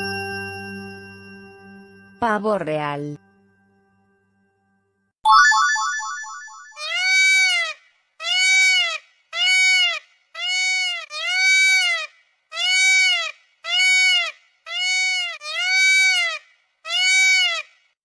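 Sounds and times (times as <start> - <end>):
peacock calling: 6.8 - 17.8.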